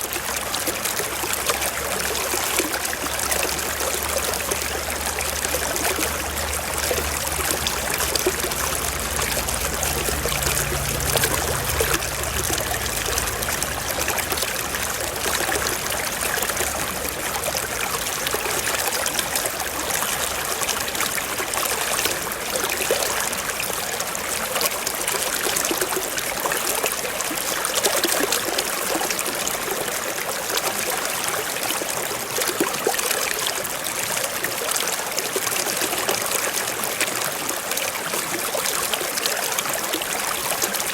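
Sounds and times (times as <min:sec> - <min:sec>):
stream trickling over rocks: 0:00.0 - 0:40.9
faint low rumble: 0:03.5 - 0:18.3.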